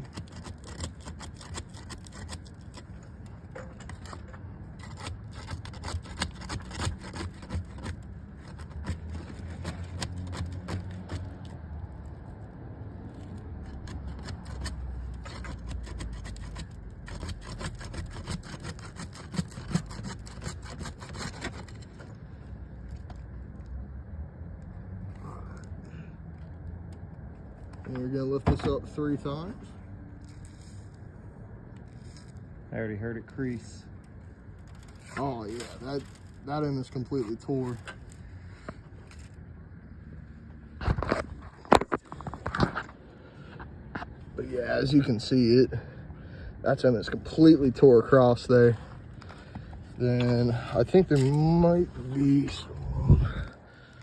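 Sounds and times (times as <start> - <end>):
shingle crackling and scraping: 0.0 - 23.8, 24.6 - 54.0
steady low rumble: 45.8 - 54.0.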